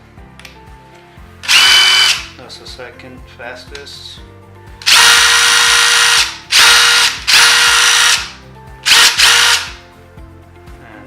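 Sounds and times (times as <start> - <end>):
impact driver whining: 1.4 - 2.3, 4.8 - 9.8.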